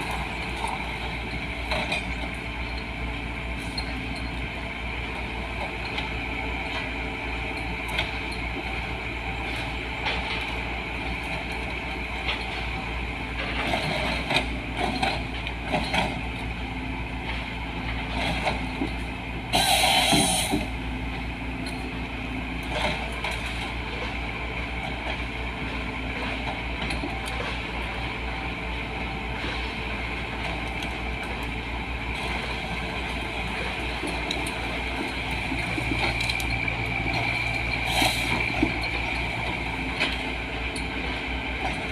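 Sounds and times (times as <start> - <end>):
excavator running: 0.0 - 41.9
loud hiss: 19.5 - 20.7.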